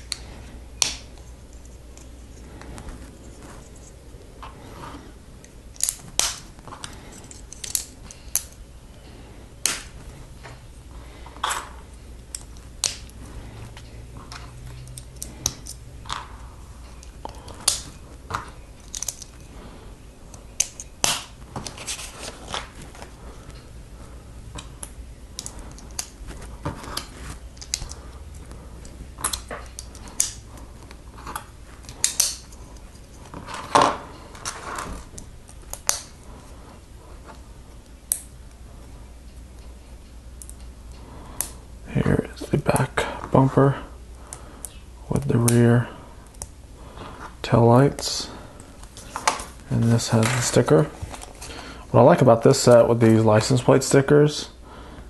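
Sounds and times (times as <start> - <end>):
plastic rustles: 21.4 - 23.6.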